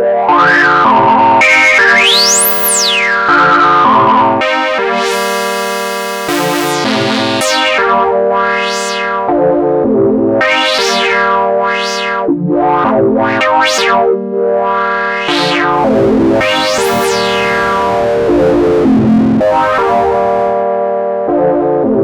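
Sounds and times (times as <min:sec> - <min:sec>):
synthesizer with filter sweeps: 0:04.4 - 0:09.2, 0:15.2 - 0:20.6.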